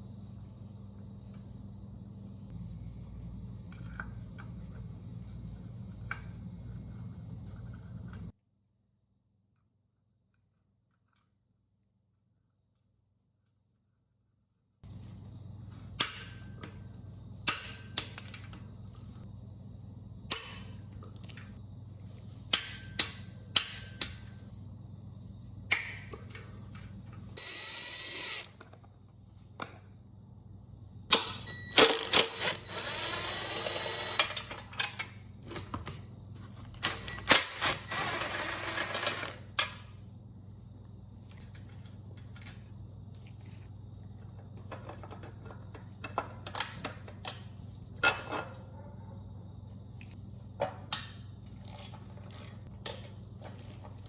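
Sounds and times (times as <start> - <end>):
steady low hum: 0.0 - 8.4, 13.3 - 31.7.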